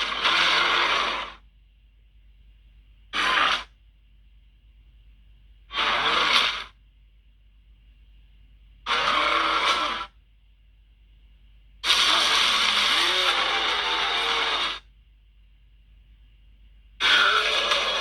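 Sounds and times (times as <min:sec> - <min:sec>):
monster hissing cries: 0:08.9 - 0:10.1, 0:11.8 - 0:14.8, 0:17.0 - 0:18.0.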